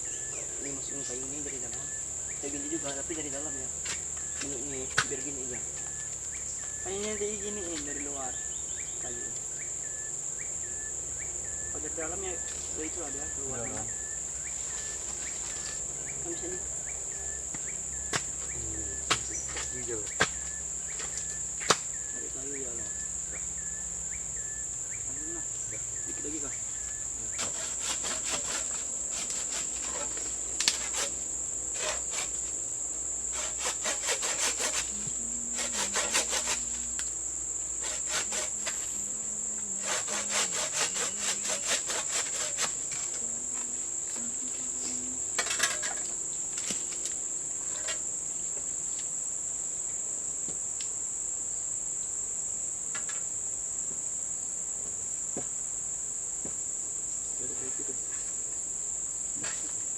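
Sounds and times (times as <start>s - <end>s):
high-pitched insect chorus: 0.0s - 59.9s
wooden poles knocking and scraping: 27.3s - 32.6s, 33.3s - 37.0s, 37.8s - 39.0s, 39.8s - 44.4s, 45.3s - 48.7s.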